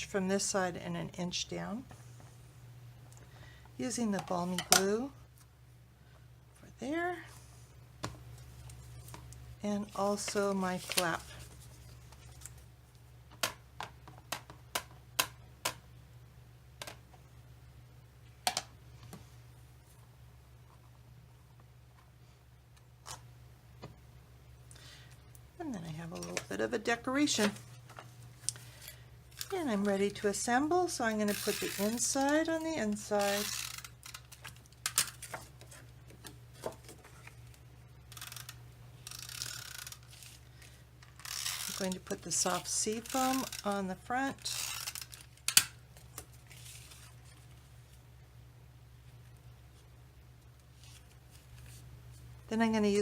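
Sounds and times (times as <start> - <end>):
low room hum: 0.0 - 53.0.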